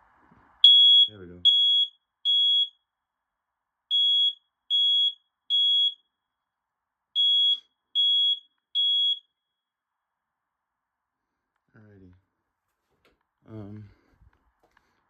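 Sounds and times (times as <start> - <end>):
smoke alarm beeping: 0.6 - 2.9, 3.9 - 6.2, 7.1 - 9.7.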